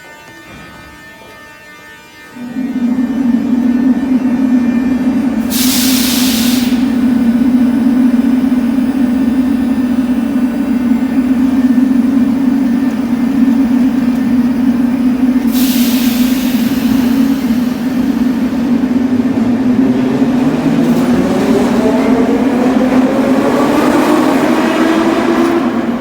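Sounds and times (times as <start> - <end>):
metro train humming: 0.0 - 26.0
air brake hisses: 5.5 - 7.1, 15.4 - 18.6.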